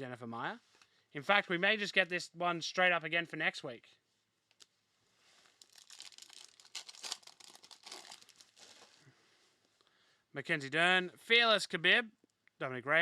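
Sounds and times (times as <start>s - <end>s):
wrapper crinkling and tearing: 5.4s - 9.0s.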